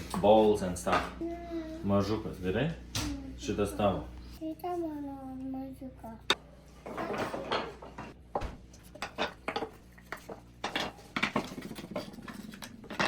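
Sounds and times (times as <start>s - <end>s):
wooden spoons and bowls knocking: 6.8s - 13.0s.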